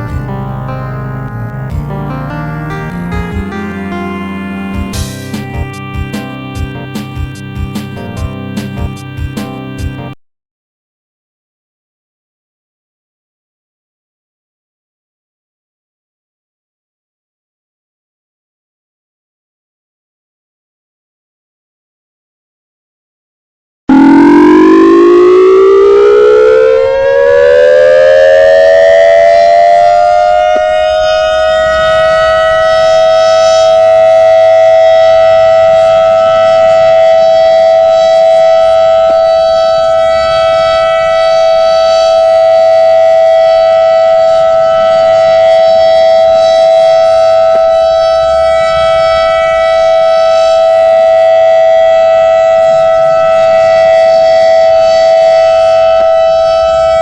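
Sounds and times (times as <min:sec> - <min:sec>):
electronic warning siren: 0:00.0 - 0:10.1, 0:23.9 - 0:57.0.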